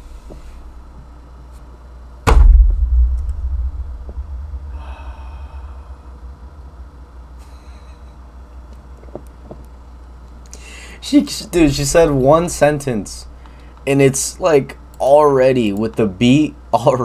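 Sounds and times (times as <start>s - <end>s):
deep low rumble: 2.3s - 8.8s.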